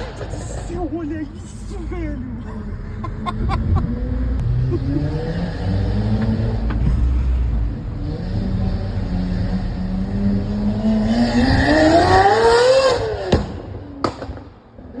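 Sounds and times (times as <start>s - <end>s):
car engine revving: 2.7s - 14.2s.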